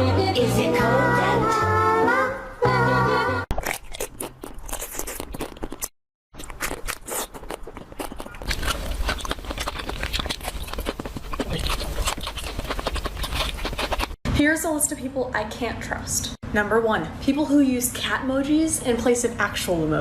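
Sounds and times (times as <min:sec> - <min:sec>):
crunching clicks: 0:03.5 - 0:14.2.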